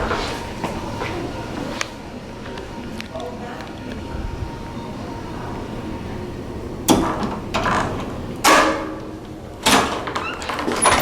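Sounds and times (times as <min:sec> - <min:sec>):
doors shutting with clunks: 0:09.6 - 0:11.0.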